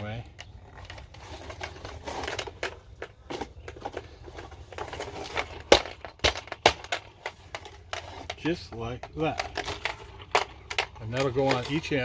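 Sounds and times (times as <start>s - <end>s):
small chain rattling: 4.3s - 12.0s.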